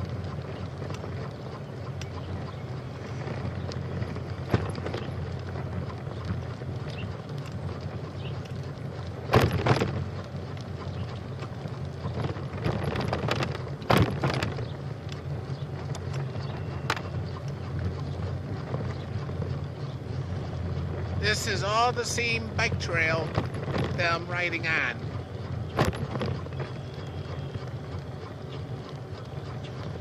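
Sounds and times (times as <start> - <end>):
wind rumble on microphone: 0.0 - 30.0.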